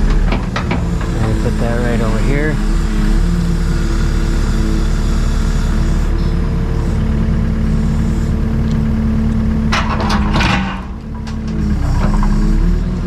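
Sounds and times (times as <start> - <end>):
excavator diesel engine running: 0.0 - 13.0
clatter of rock: 9.7 - 12.5.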